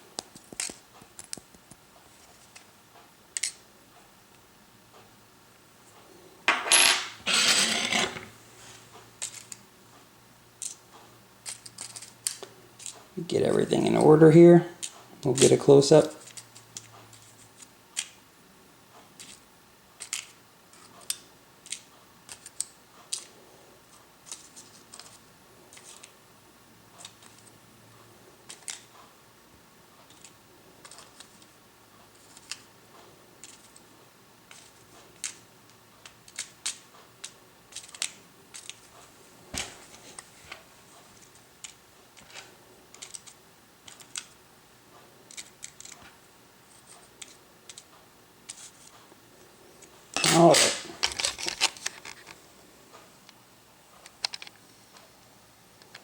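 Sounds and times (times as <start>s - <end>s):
small metal parts clicking: 41.6s - 44.4s, 45.3s - 46.0s.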